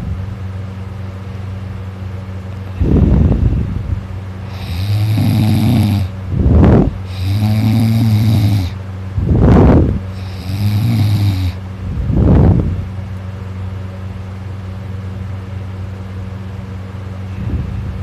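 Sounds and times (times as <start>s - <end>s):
person snoring loudly: 4.4s - 6.1s, 6.7s - 8.8s, 10.1s - 11.6s.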